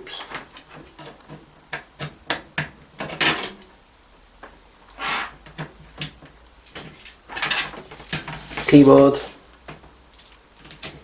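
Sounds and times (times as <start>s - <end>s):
scraping rustles: 6.6s - 9.4s.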